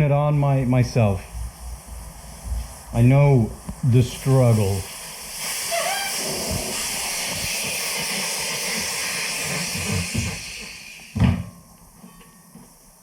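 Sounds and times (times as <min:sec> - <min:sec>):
compressed air hissing into tyre: 0:00.9 - 0:11.2
sharp thump: 0:11.2 - 0:11.6.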